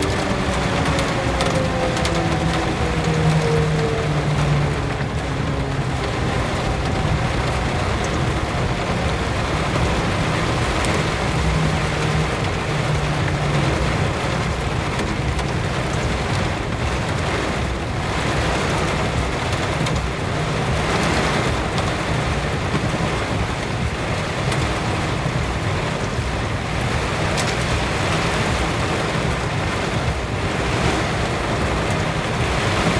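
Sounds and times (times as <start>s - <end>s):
low steady hum: 0.0s - 28.6s
heavy rain on a vehicle: 0.0s - 32.9s.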